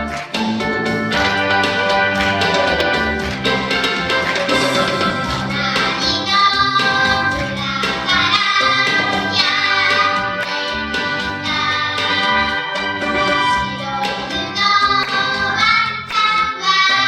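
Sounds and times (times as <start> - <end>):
children's song with instruments: 0.0 - 17.0.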